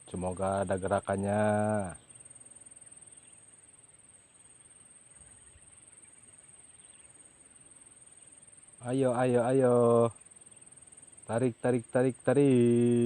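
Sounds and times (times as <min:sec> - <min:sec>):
high-pitched insect drone: 0:00.0 - 0:13.0.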